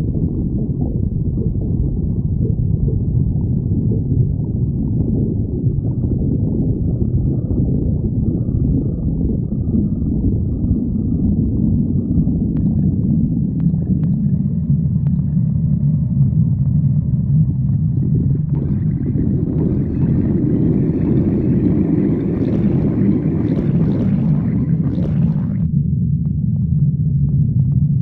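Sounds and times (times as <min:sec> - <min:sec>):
stomach growling: 0:00.0 - 0:25.8.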